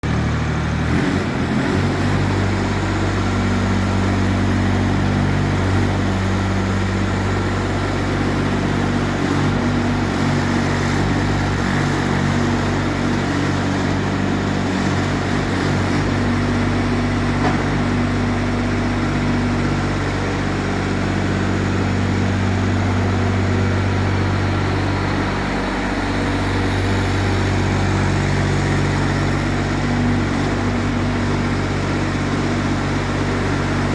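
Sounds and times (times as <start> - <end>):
excavator engine running: 0.0 - 33.9.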